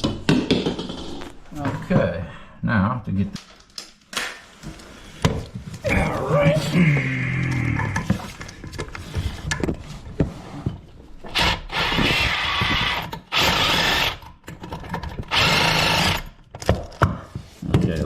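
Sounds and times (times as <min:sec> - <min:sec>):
cordless drill running: 0:11.3 - 0:14.2, 0:15.3 - 0:16.4
handling knocks and clicks: 0:14.2 - 0:15.3, 0:16.4 - 0:18.0.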